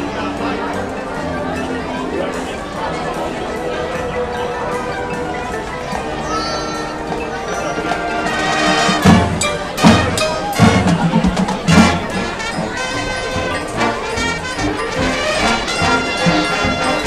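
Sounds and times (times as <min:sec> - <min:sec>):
marching band brass and drums: 0:06.9 - 0:17.0.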